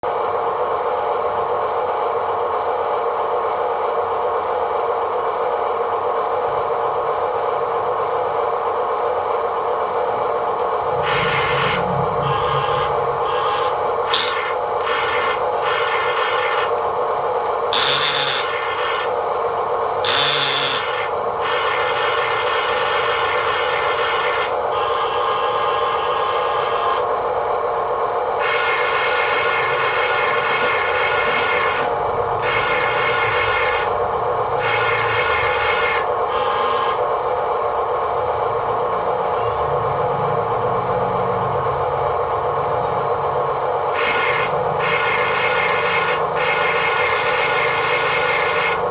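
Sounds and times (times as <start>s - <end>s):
rasping hiss bursts: 11.0s - 16.7s, 17.7s - 19.1s, 20.0s - 27.0s, 28.4s - 33.9s, 34.6s - 37.0s, 44.0s - 48.8s
small electric motor whining: 11.0s - 19.2s, 20.0s - 27.2s, 28.4s - 34.0s, 34.6s - 37.1s, 43.9s - 48.9s.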